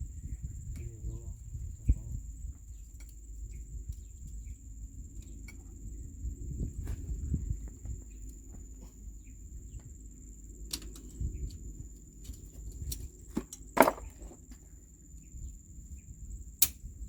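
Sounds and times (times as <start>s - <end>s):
low rumble: 0.0s - 12.0s.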